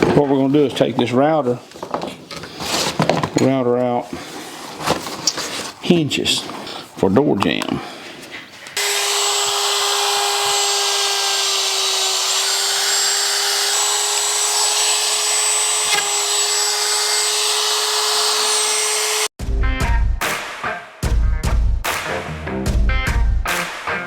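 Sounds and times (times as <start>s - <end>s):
wood router whining: 8.8s - 19.3s.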